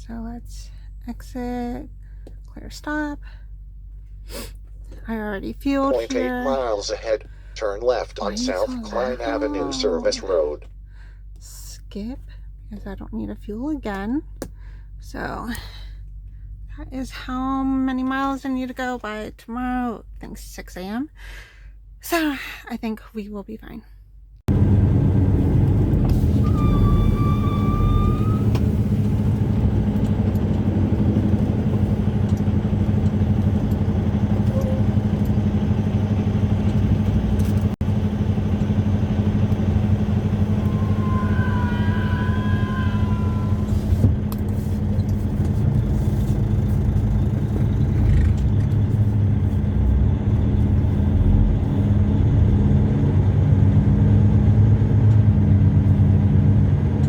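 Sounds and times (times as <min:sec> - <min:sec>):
truck engine drone: 0:05.1 - 0:13.3, 0:24.5 - 0:57.0
road noise: 0:05.6 - 0:10.9, 0:24.5 - 0:57.0.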